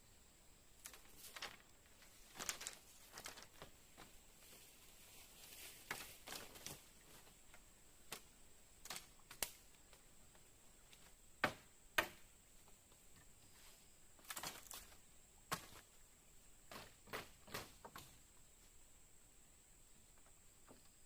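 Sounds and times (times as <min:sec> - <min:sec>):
small clicks and rustles: 0:00.8 - 0:11.1, 0:14.2 - 0:15.7.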